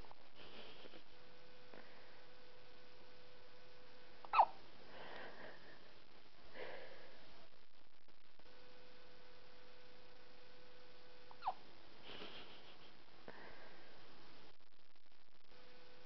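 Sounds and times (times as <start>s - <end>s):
soft breaths or sniffs: 0.3s - 1.1s, 12.0s - 14.1s
squeaky hiccup: 4.3s - 4.6s, 11.3s - 11.6s.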